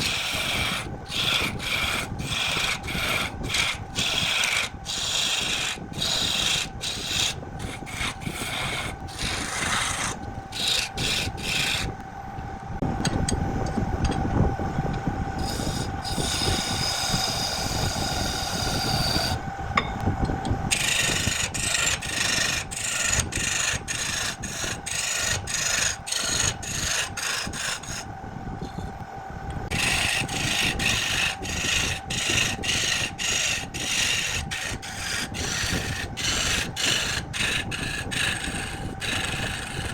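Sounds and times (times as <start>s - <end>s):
turning tool scraping wood: 0.0s - 12.0s, 15.4s - 19.4s, 20.7s - 29.0s, 29.7s - 39.9s
wood lathe hum: 0.0s - 12.4s, 15.2s - 19.5s, 20.7s - 39.9s.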